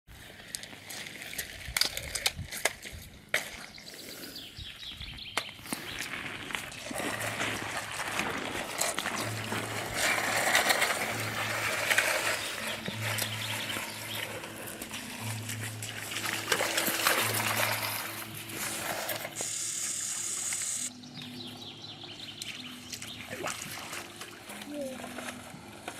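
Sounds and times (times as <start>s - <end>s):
stream water running: 5.7s - 20.9s, 22.3s - 25.9s.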